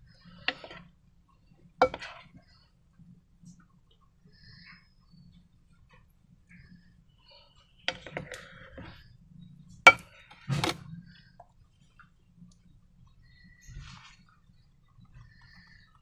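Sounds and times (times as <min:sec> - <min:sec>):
hard objects knocking and clicking: 0:01.8 - 0:02.2.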